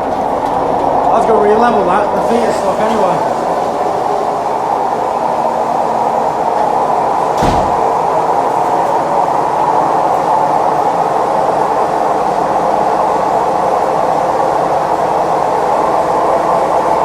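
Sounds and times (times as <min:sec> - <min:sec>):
washing machine spin roar: 0:00.0 - 0:17.0
washing machine heavy knock: 0:07.3 - 0:08.3.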